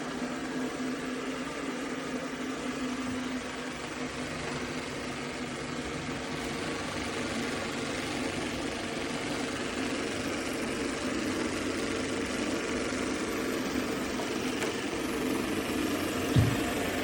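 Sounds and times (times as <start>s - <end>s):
robot vacuum running: 12.8s - 17.0s
short thump: 16.3s - 16.8s.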